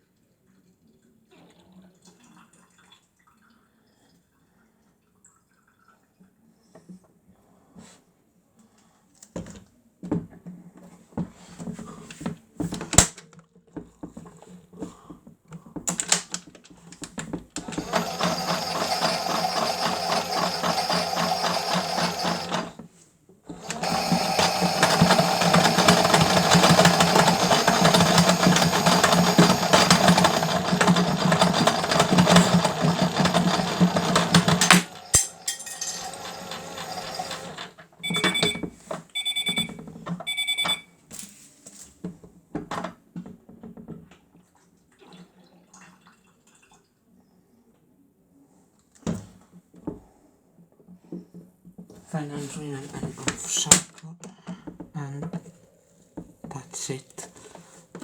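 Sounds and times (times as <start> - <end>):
toy washing machine motor whirring: 16.9 - 22.9, 23.5 - 40.8
clicks and knocks: 23.5 - 38.7.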